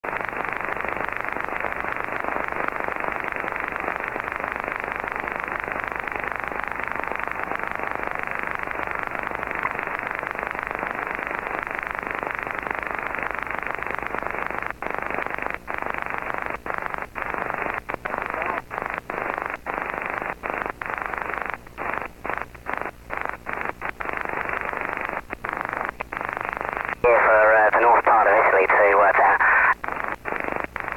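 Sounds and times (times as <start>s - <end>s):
radio static interference: 21.2s - 30.9s.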